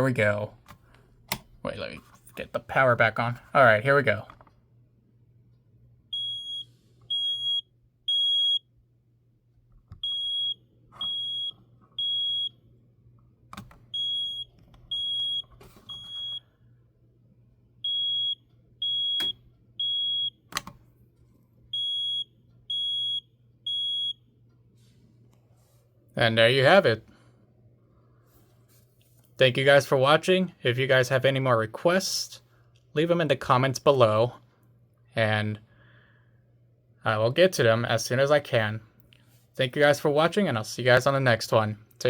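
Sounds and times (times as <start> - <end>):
smoke alarm beeping: 6.1 - 8.7, 10.0 - 12.7, 13.9 - 16.6, 17.8 - 20.6, 21.7 - 24.3.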